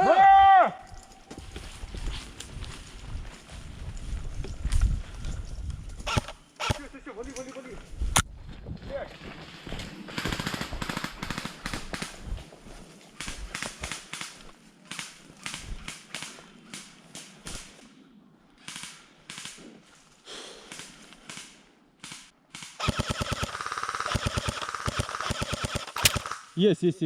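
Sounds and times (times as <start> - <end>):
airsoft rifles firing bursts: 22.1 - 26.5.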